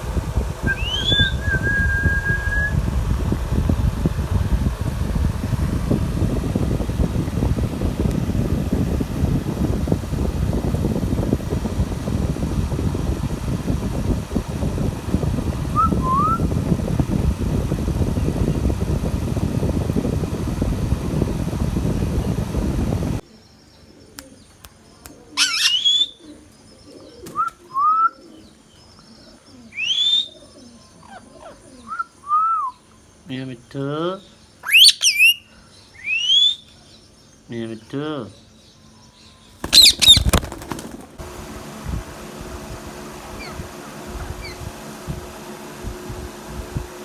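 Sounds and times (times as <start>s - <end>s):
loud low rumble: 0.0s - 23.2s
parakeet sharp rising call: 0.7s - 2.7s, 25.4s - 26.1s, 34.6s - 35.4s, 39.6s - 40.8s, 43.3s - 43.6s, 44.4s - 44.6s.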